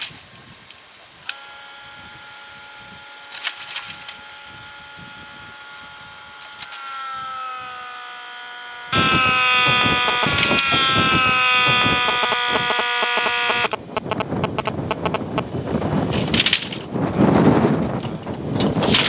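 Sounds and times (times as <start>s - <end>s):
electric motor whining: 1.2s - 19.0s
mechanical clatter with clicking: 3.3s - 4.3s, 16.1s - 16.9s, 17.8s - 19.0s.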